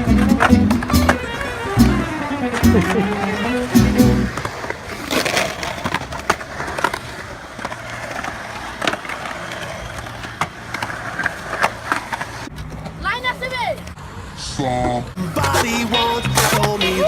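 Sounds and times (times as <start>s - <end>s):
skateboard clacking on ground: 0.0s - 14.0s, 14.7s - 17.0s
skateboard wheels rolling on pavement: 0.0s - 17.0s.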